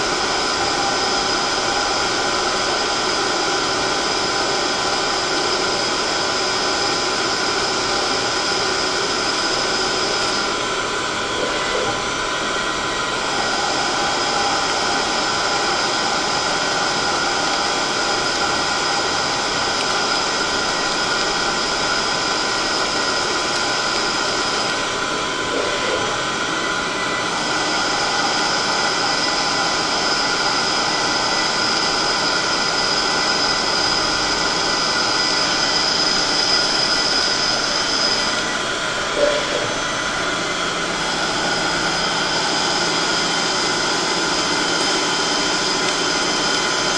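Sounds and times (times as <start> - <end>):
cnc machine running: 0.0 - 46.9
high machine whine: 0.0 - 46.9.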